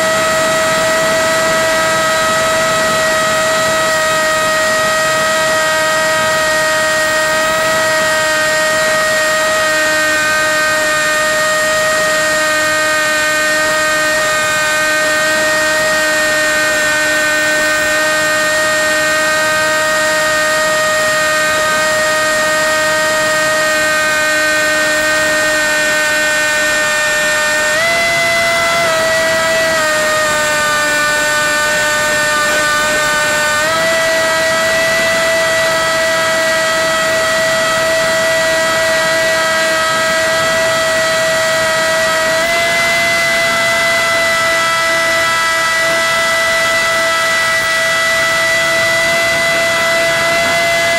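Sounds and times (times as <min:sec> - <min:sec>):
electric motor and propeller whining: 0:00.0 - 0:50.9.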